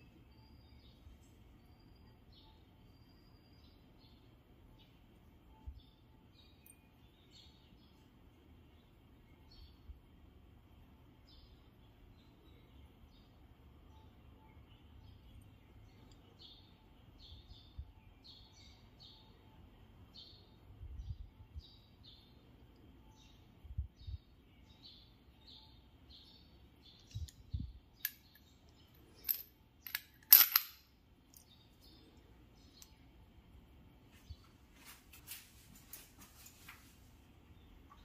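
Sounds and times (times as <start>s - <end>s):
small bird chirping: 0.0s - 8.1s, 11.3s - 29.4s.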